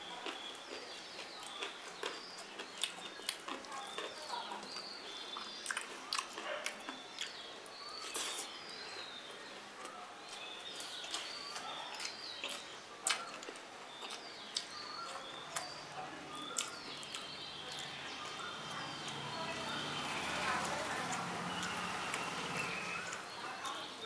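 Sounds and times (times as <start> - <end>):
person chewing food: 0.0 - 9.2, 9.8 - 15.8, 16.4 - 19.2
birds chirping: 0.0 - 24.0.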